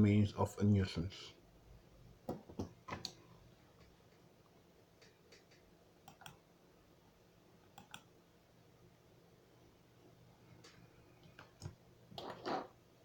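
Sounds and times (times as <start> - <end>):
faint clicks in pairs: 5.0 - 6.4, 10.6 - 11.8.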